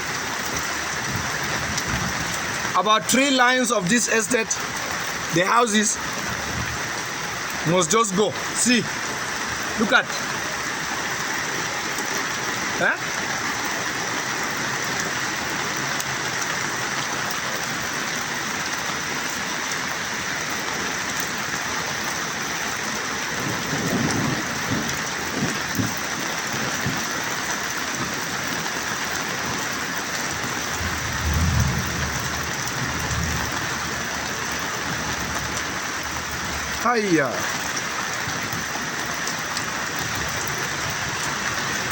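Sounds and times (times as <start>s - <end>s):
heavy rain hissing: 0.0s - 41.9s
low rumbles: 30.4s - 36.5s.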